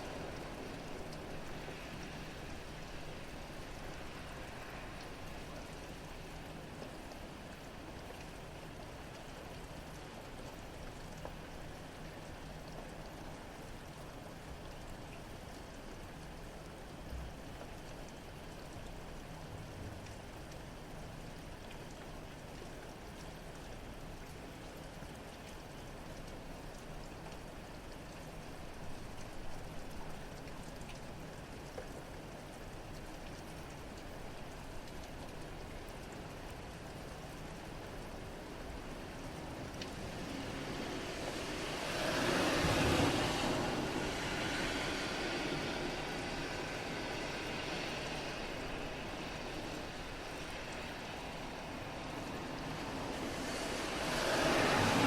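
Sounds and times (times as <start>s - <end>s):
car tyres hissing on wet road: 0.0s - 7.4s, 38.2s - 55.0s
steady rain: 0.0s - 55.0s.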